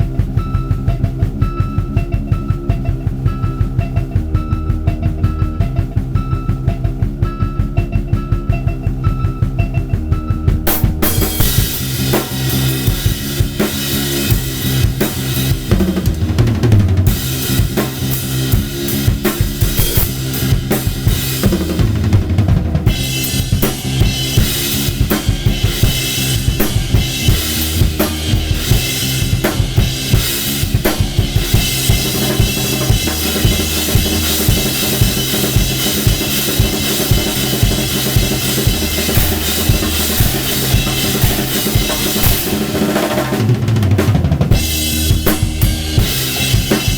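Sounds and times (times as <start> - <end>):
drum kit playing: 0.0 - 46.9.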